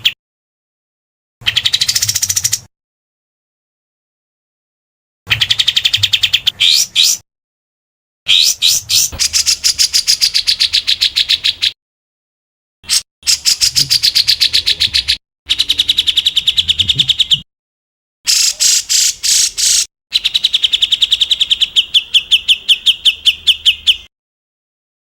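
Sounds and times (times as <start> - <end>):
songbird harsh rapid call: 5.3 - 7.2, 8.3 - 11.8, 12.8 - 17.4, 18.3 - 24.1.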